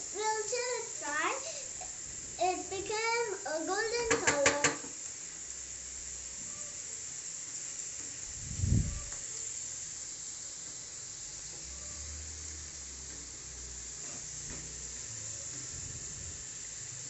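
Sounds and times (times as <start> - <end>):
fries sizzling in hot oil: 0.0 - 17.0.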